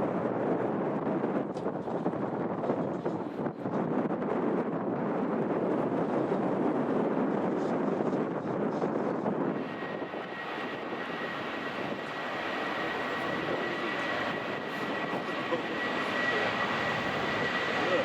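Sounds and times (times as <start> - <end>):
high jet engine whine: 0.0 - 18.0
jet engines roaring: 9.0 - 18.0.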